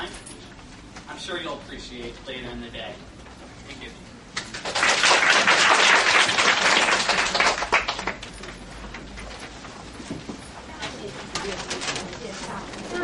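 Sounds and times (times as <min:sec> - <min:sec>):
audience applauding: 0:04.5 - 0:08.3.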